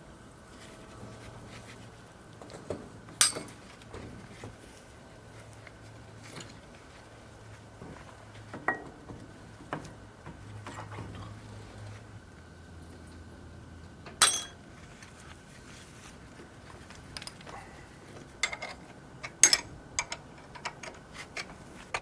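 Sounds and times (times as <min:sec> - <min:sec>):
metal tools clinking: 0:03.2 - 0:03.6, 0:14.1 - 0:14.7, 0:18.4 - 0:21.5
sharp metallic clank: 0:14.2 - 0:14.6.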